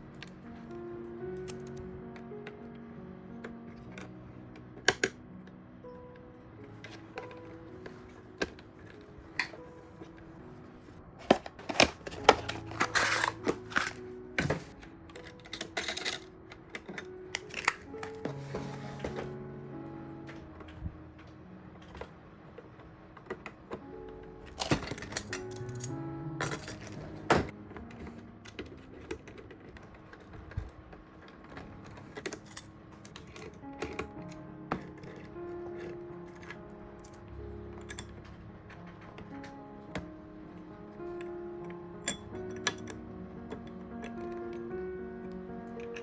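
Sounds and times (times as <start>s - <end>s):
faint background music: 0.0s - 46.0s
clicks and knocks of computer parts: 1.2s - 1.8s, 3.8s - 5.3s, 11.2s - 19.4s, 24.5s - 38.4s
rustling scrapes: 6.7s - 16.3s, 17.3s - 19.4s
clicks of computer parts handled: 11.2s - 18.4s.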